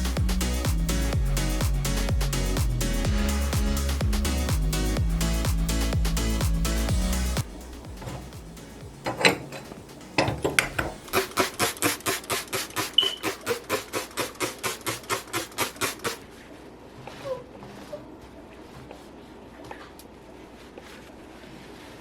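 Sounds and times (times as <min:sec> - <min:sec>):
hand scrubbing strokes: 0:10.9 - 0:19.6, 0:20.2 - 0:22.0.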